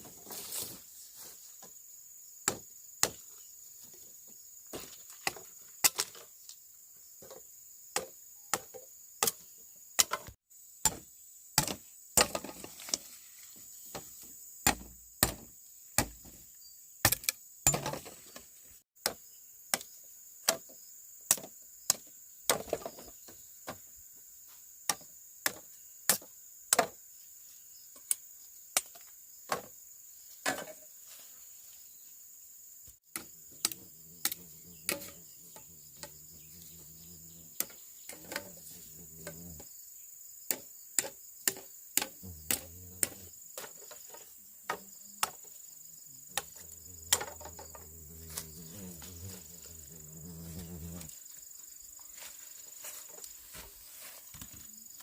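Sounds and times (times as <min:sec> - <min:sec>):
crickets droning: 0:00.0 - 0:55.0
hand tool chopping blows: 0:33.1 - 0:38.6.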